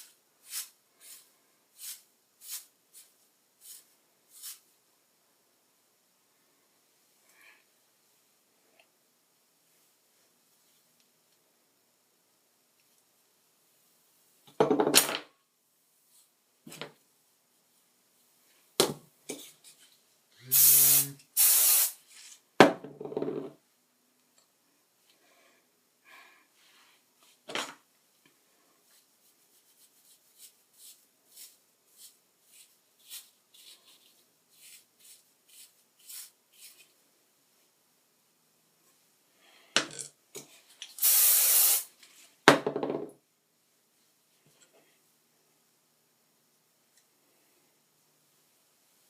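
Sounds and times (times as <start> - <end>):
comb strokes through hair: 0.0 - 4.7, 28.8 - 37.0
hairspray hissing: 20.5 - 22.0, 41.0 - 41.9.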